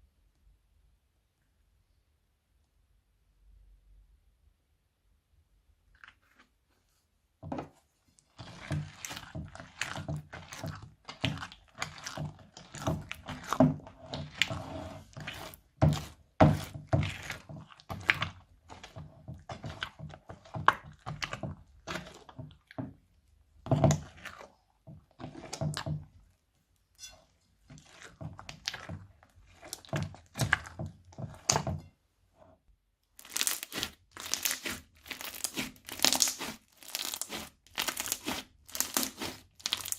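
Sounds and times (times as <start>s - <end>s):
slime crackling and popping: 33.1s - 39.9s.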